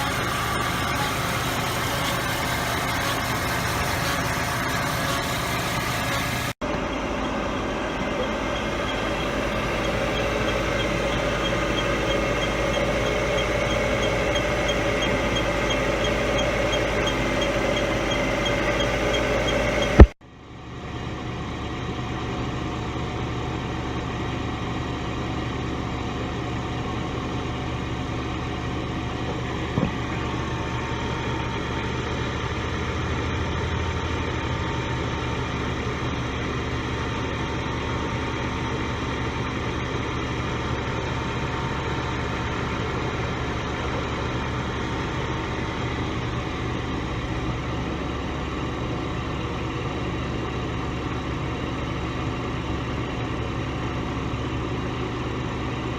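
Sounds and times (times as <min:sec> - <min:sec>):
car engine humming: 0:00.0 - 0:20.2
faint steady whine: 0:00.0 - 0:20.2.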